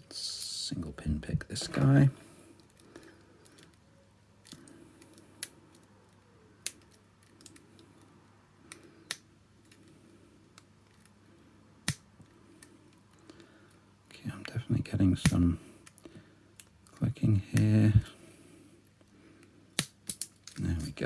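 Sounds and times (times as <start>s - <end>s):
lock pins clicking: 19.8s - 21.0s.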